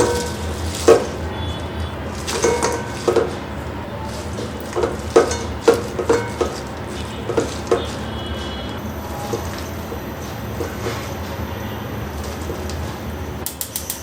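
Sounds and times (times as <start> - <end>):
utensil knocking on cookware: 2.2 - 3.5, 4.3 - 8.2.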